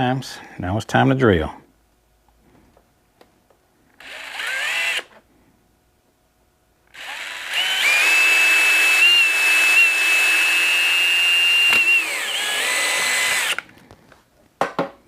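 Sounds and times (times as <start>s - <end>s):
power drill whining: 3.9s - 5.2s, 6.9s - 13.8s.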